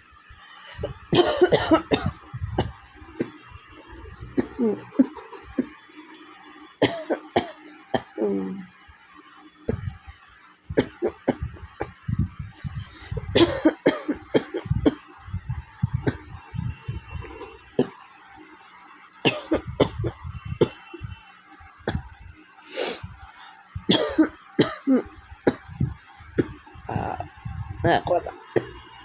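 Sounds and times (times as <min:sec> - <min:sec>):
woman coughing: 0:01.1 - 0:03.3, 0:04.4 - 0:05.7, 0:13.3 - 0:14.8, 0:19.3 - 0:20.2, 0:23.9 - 0:25.7.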